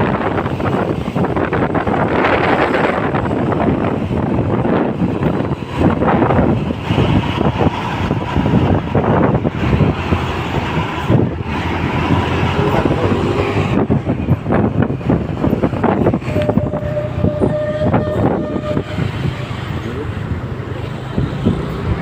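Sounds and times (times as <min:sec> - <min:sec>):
vehicle engine and tyre roar: 0:00.0 - 0:22.0
wind buffeting microphone: 0:00.0 - 0:22.0
faint horn-like tone: 0:16.2 - 0:19.2.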